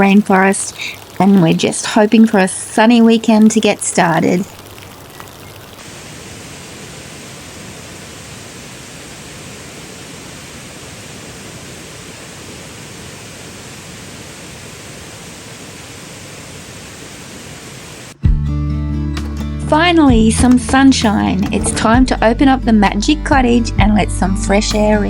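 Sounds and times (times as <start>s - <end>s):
heavy rain falling: 0.0s - 18.1s.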